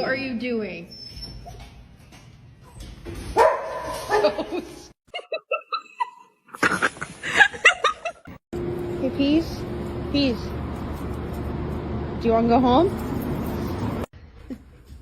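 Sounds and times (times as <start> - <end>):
dog barking and yipping: 3.4 - 4.4.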